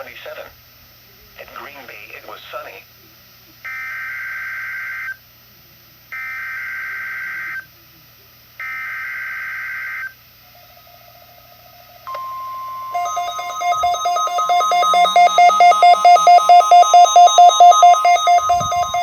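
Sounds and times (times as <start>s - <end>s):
pulsing electronic alarm beep: 12.1s - 19.0s
steady warning alarm tone: 12.1s - 19.0s.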